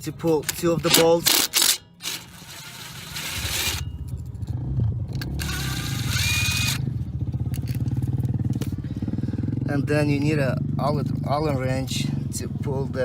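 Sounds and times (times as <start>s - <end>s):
engine running with pulsing note: 2.0s - 9.9s.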